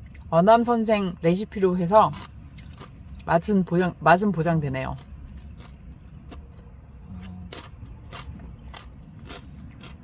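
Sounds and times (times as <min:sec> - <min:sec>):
low steady rumble: 0:00.0 - 0:10.0
person chewing crunchy food: 0:02.1 - 0:03.3, 0:04.7 - 0:10.0.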